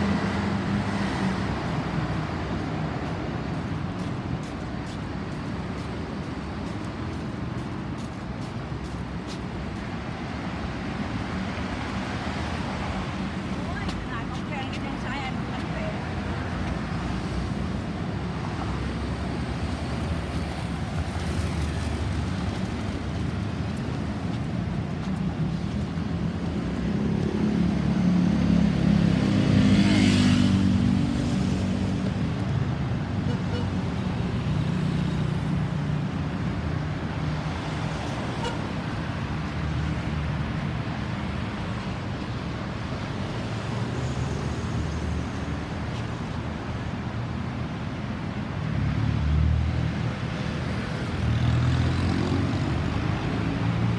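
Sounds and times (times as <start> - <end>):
road traffic: 0.0 - 53.9
vehicle passing close by: 26.7 - 32.4.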